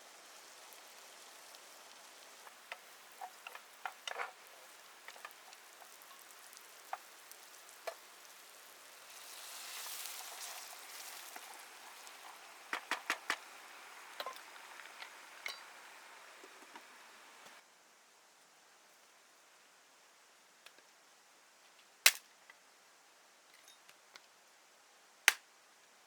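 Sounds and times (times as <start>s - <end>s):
wood fire crackling and sizzling: 0.0s - 17.6s
steady hiss: 0.0s - 26.0s.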